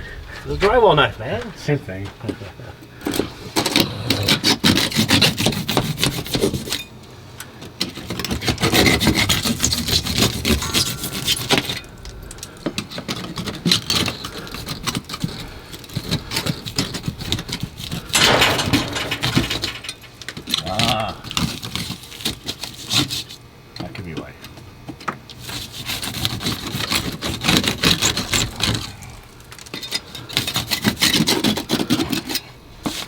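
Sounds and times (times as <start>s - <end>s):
hand saw rasping through drywall: 3.6s - 6.8s, 7.8s - 11.8s, 13.0s - 18.2s, 21.4s - 23.4s, 25.4s - 28.9s, 29.8s - 33.0s.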